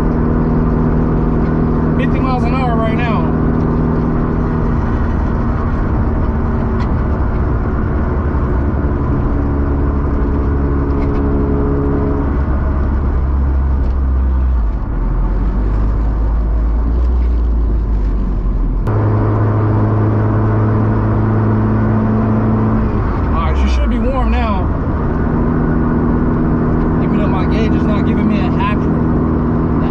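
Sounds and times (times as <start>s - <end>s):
car engine inside cabin: 0.0s - 29.9s
road noise: 0.0s - 29.9s.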